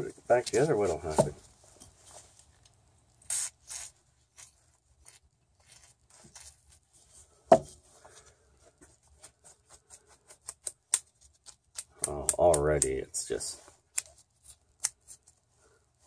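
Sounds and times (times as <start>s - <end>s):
rubbing sounds: 0.0s - 2.6s, 3.2s - 11.8s.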